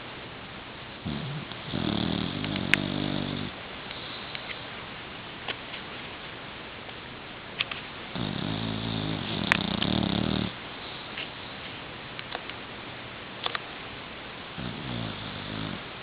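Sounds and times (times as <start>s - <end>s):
puppy snoring: 1.0s - 4.3s, 8.1s - 11.0s, 14.6s - 15.9s.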